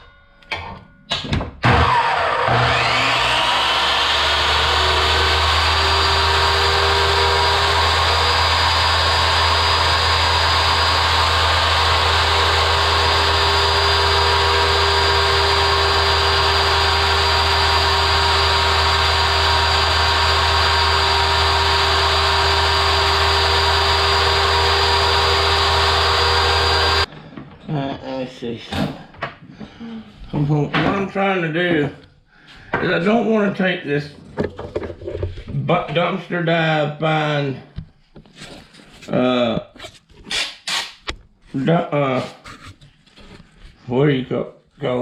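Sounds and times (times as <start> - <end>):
chop saw motor whining: 1.6 - 27.1.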